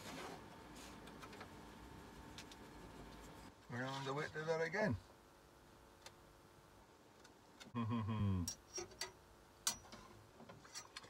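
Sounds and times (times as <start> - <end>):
short hum of voice: 7.8 - 8.5.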